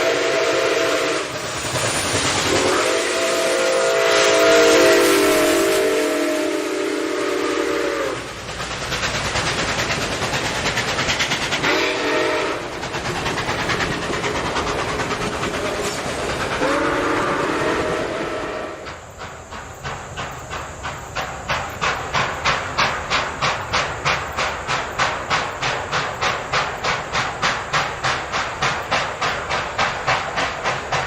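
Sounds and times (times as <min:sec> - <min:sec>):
steam locomotive whistle: 0:00.0 - 0:01.6, 0:02.4 - 0:08.4, 0:11.6 - 0:12.7, 0:16.6 - 0:19.0
steam hissing: 0:00.0 - 0:31.0
steam locomotive chuffing: 0:00.0 - 0:31.0.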